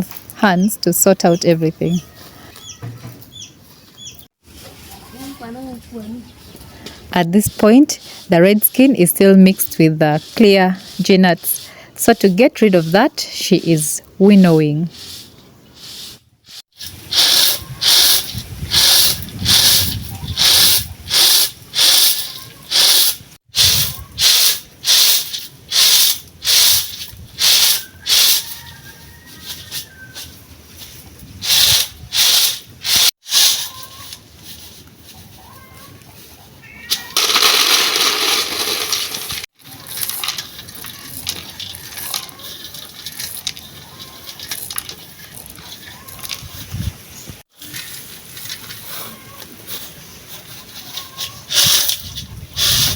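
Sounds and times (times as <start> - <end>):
hissing rush: 15.0 - 28.5
nuts rattling on winnowing tray: 16.8 - 28.8, 31.4 - 34.1, 36.9 - 46.4, 50.8 - 52.9.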